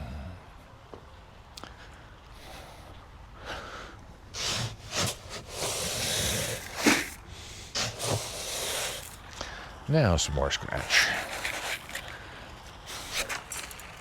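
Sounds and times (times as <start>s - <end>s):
rustling and scraping handling: 4.4s - 9.4s, 10.7s - 14.0s.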